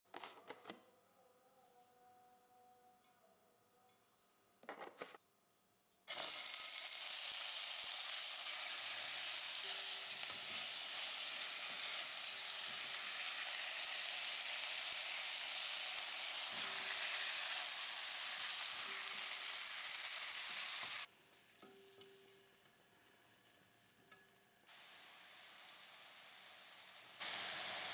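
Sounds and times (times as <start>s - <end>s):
food sizzling in hot oil: 6.1s - 21.7s, 24.7s - 27.9s.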